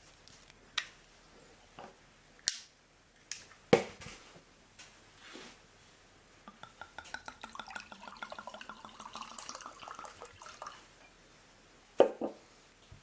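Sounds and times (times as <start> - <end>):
liquid pouring with gurgling glugs: 6.5 - 10.9.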